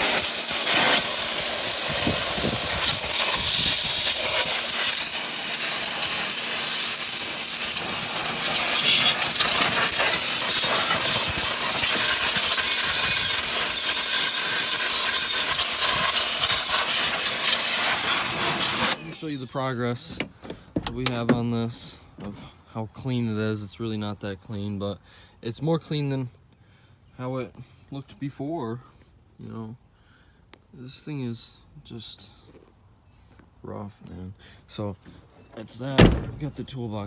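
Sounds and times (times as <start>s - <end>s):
high-pressure jet hissing: 0.0s - 19.3s, 36.0s - 36.6s.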